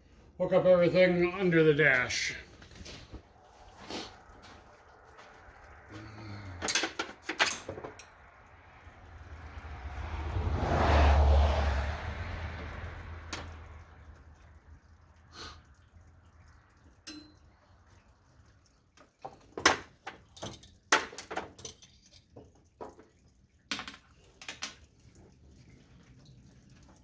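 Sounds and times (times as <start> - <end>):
rushing noise: 9.2 - 13.3.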